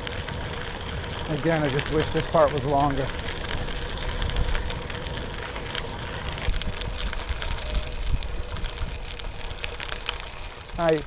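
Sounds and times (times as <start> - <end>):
bicycle tyres on dirt: 0.0 - 11.0
grit crackling under wheels: 0.0 - 11.0
wind on microphone: 6.4 - 9.4.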